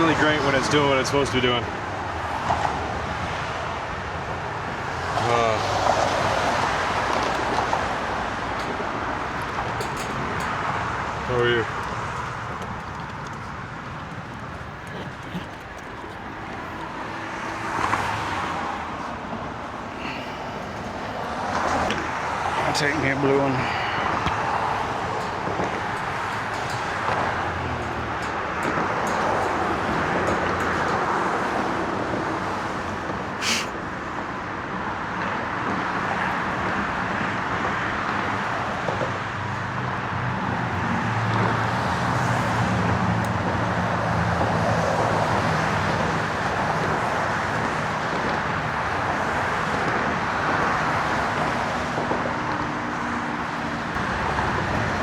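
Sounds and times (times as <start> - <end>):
road traffic noise: 0.0 - 55.0
engine low hum: 8.4 - 30.8.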